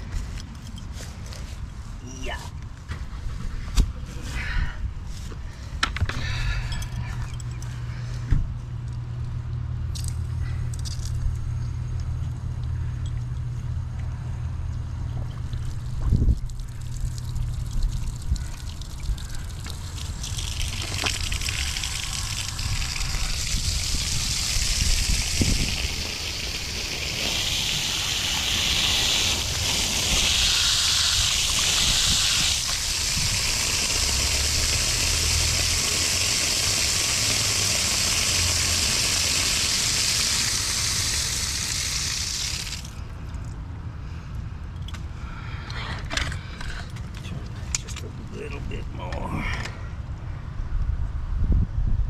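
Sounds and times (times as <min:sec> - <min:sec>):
low steady hum: 0:00.0 - 0:52.0
water rushing through pipes: 0:15.2 - 0:43.5.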